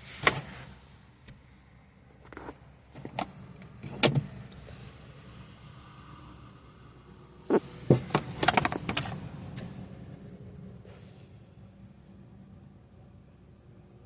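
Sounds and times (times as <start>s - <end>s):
clicks and knocks of car parts: 7.5s - 9.2s.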